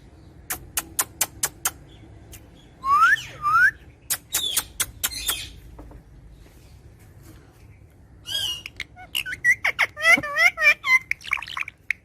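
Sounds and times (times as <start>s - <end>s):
birds chirping: 0.0s - 12.0s
rising whistled bird notes: 2.8s - 5.4s.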